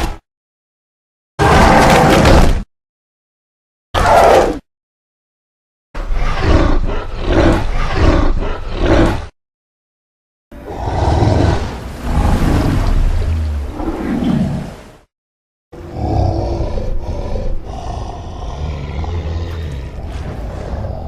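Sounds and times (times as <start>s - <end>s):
creature roaring: 4.0s - 4.7s, 6.1s - 9.3s, 10.6s - 12.5s, 15.8s - 21.0s.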